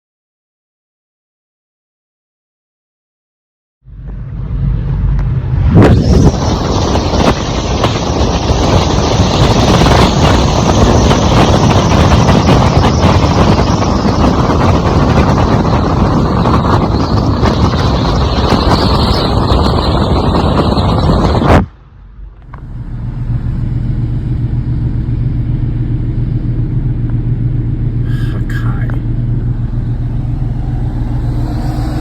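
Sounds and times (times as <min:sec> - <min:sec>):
moving vehicle rumble: 0:03.8 - 0:32.0
wind buffeting microphone: 0:03.9 - 0:23.0.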